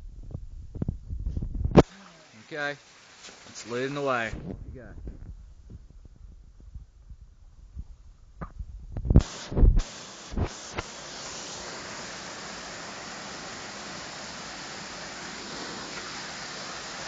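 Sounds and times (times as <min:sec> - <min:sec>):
waterfall rushing: 0:01.8 - 0:04.3, 0:09.2 - 0:17.0.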